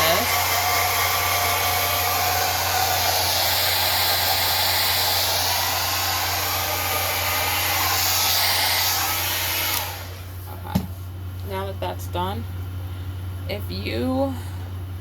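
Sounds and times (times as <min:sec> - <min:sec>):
hair dryer blowing: 0:00.0 - 0:10.9.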